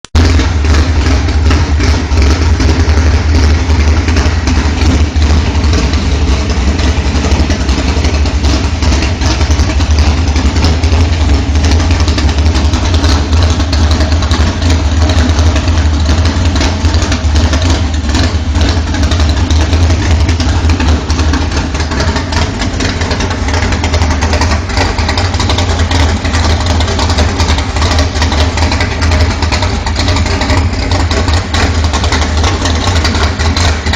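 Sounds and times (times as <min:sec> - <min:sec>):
car engine idling loudly: 0:00.0 - 0:33.9.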